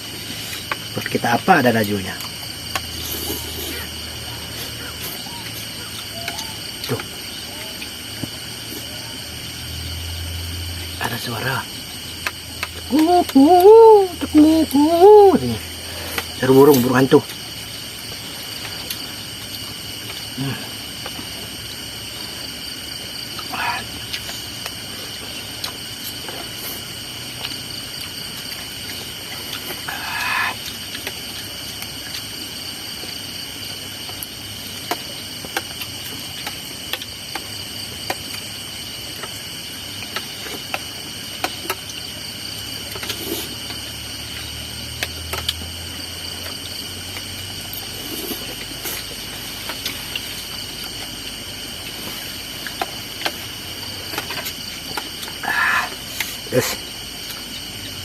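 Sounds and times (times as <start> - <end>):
insects shrilling: 0.0 - 58.0
harsh owl call: 3.7 - 6.6, 12.9 - 15.6.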